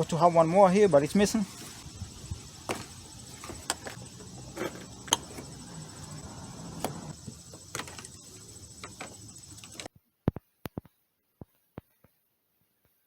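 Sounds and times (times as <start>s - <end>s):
steady background hiss: 0.0s - 9.9s
hand tools and bolts clicking: 2.7s - 9.9s.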